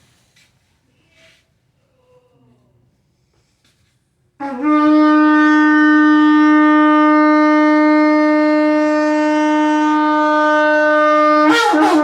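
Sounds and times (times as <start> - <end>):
shofar held note: 4.4 - 12.0.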